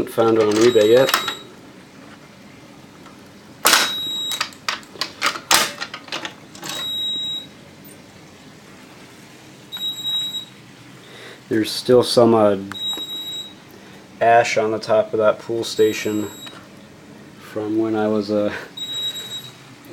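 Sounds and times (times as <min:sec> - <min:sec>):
short high electronic beeps: 0:18.8 - 0:19.6.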